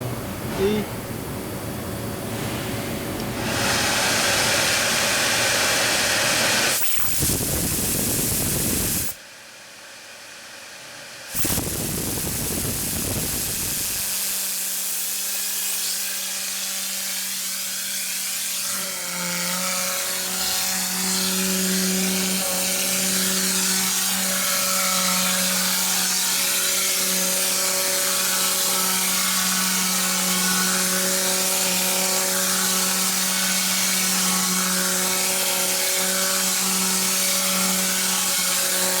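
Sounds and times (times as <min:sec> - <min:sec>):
air vacuum gun rushing: 0:03.4 - 0:09.2, 0:11.3 - 0:14.4.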